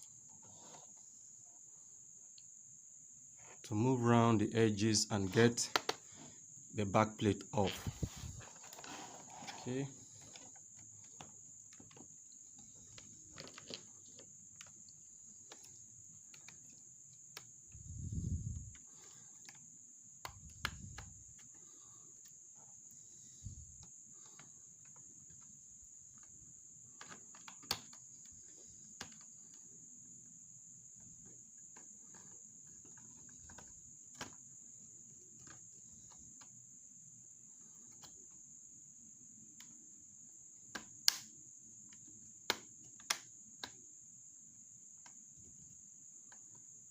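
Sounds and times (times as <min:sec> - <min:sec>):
plastic clips snapping: 0:40.7 - 0:41.3.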